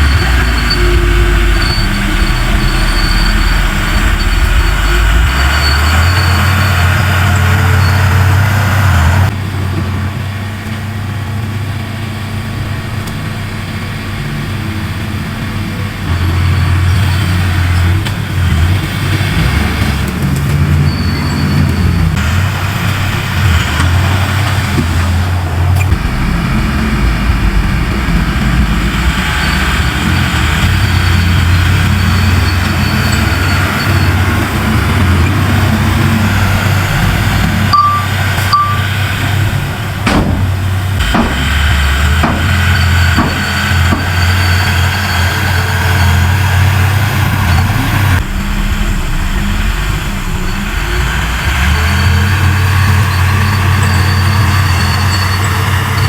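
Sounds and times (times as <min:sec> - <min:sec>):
short beeps: 0:00.0 - 0:08.1, 0:36.1 - 0:38.9
diesel machinery engine rumble: 0:00.0 - 0:56.0
sharp metallic knocks: 0:17.2 - 0:56.0.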